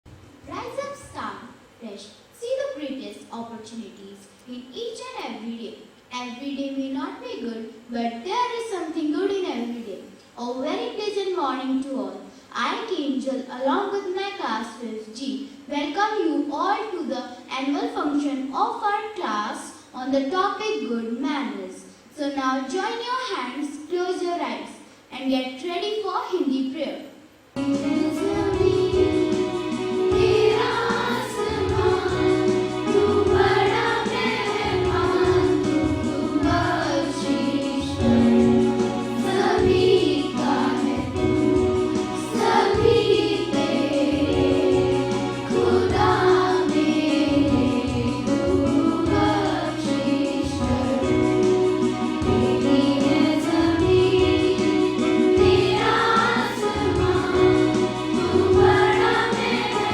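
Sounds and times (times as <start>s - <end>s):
musical accompaniment: 27.6s - 59.9s
group singing a prayer: 27.8s - 59.9s.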